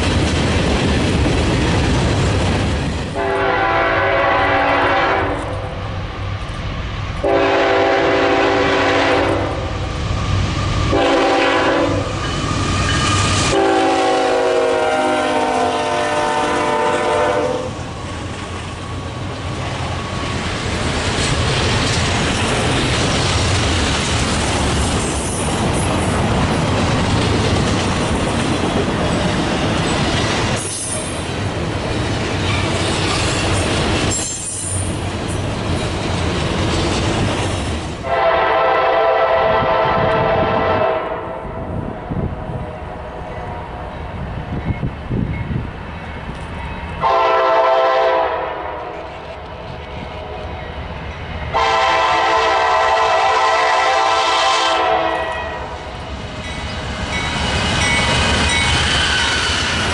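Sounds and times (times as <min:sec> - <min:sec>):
train rumbling on rails: 0:00.0 - 0:59.9
locomotive air horn: 0:03.2 - 0:05.8, 0:07.2 - 0:09.7, 0:10.9 - 0:12.1, 0:13.4 - 0:17.8, 0:38.0 - 0:41.6, 0:47.0 - 0:49.1, 0:51.5 - 0:55.8.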